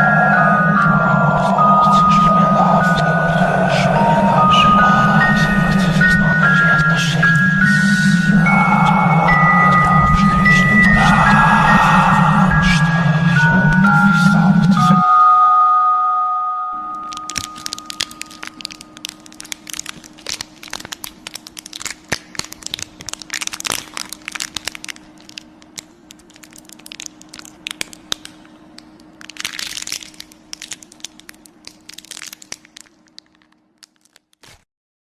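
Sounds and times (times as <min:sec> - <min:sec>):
faint low hum: 0:00.0 - 0:15.0
hissing swells: 0:00.0 - 0:15.0
crackling and snapping: 0:00.8 - 0:15.0, 0:17.0 - 0:34.6.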